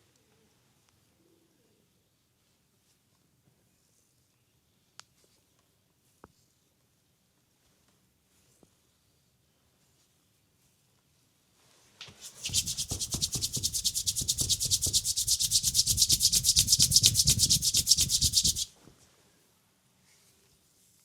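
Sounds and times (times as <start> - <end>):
hands rubbing on skin: 12.1 - 18.7.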